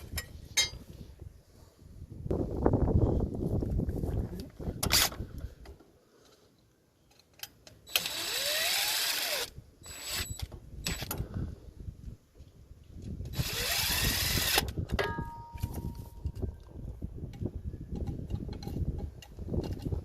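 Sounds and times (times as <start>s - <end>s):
cordless drill whining: 7.9s - 11.1s, 13.3s - 14.7s.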